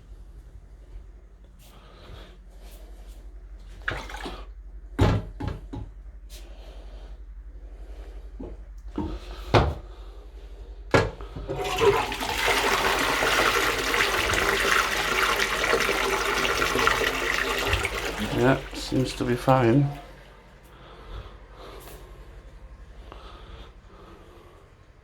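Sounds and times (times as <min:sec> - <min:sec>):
toilet flushing: 0:03.6 - 0:04.6, 0:11.3 - 0:20.7.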